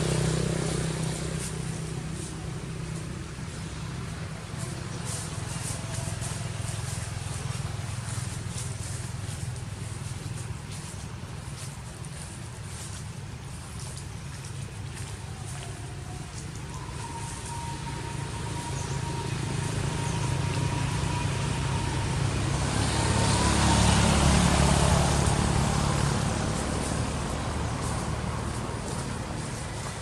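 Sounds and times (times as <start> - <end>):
vehicle passing by: 0.0 - 30.0.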